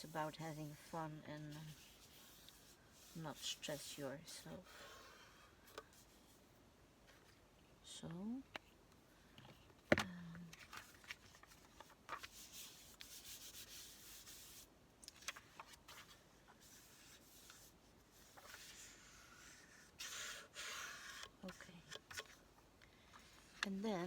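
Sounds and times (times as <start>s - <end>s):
paper rustling and rubbing: 0.0s - 4.5s, 10.5s - 24.0s.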